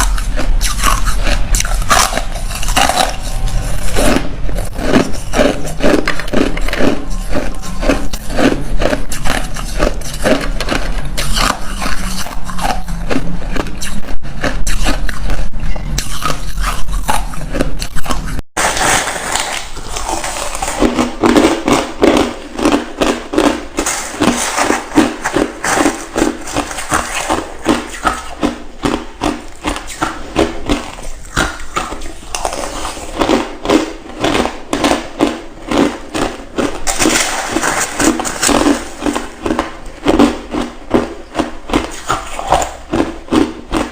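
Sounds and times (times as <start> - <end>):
ice crunching while chewed: 0.0 - 43.9.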